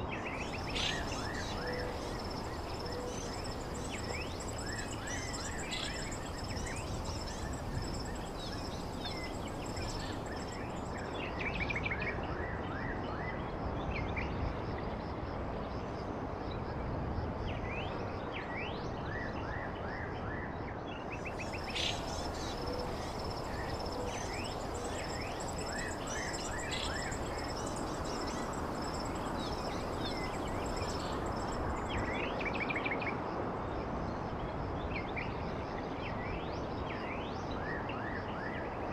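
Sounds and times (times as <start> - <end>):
birds chirping: 0.4 - 11.0, 21.3 - 32.1
high-pitched insect drone: 0.4 - 11.0, 21.4 - 32.1.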